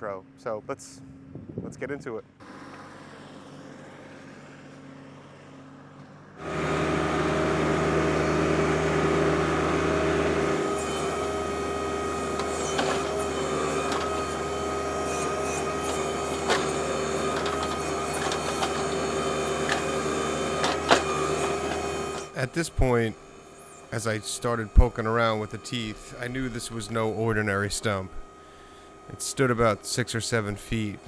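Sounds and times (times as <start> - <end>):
hydraulic whine: 2.4 - 31.0
tractor diesel engine running: 2.4 - 31.0
backhoe bucket striking wood: 10.4 - 22.4.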